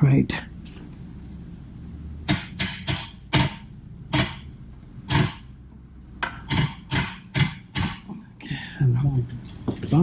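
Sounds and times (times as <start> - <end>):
tools knocking on metal: 9.5 - 10.0.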